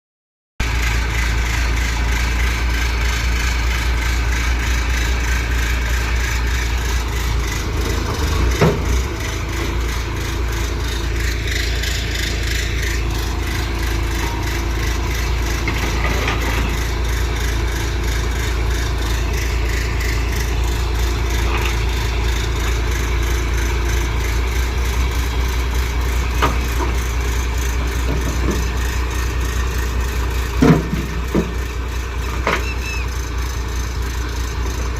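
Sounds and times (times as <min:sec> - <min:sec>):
diesel engine running: 0:00.6 - 0:34.9.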